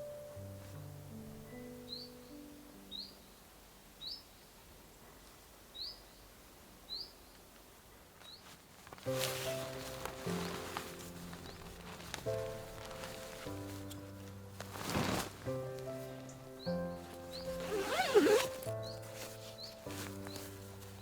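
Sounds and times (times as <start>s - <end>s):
music: 0.0s - 3.5s, 9.0s - 21.0s
faint steady hiss: 0.0s - 21.0s
bird chirping: 1.6s - 4.5s.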